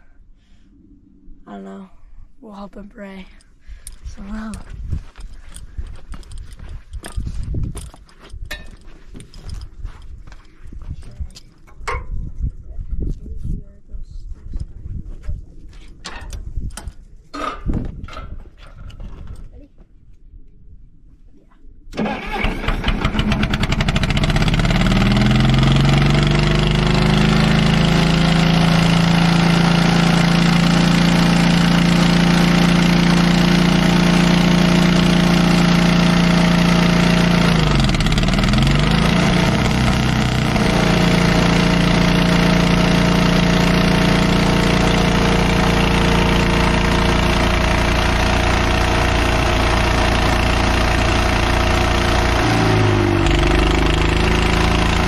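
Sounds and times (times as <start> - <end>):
bulldozer engine running: 22.0 - 55.0.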